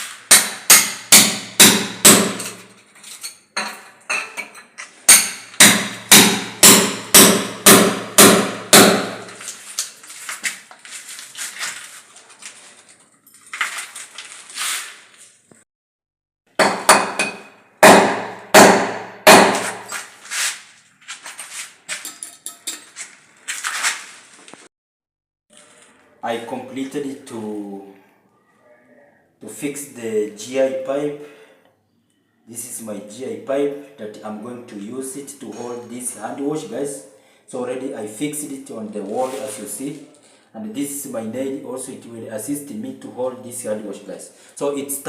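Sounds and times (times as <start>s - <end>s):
hammer striking metal pipe: 0.3s - 2.8s, 5.1s - 9.4s, 16.6s - 20.0s.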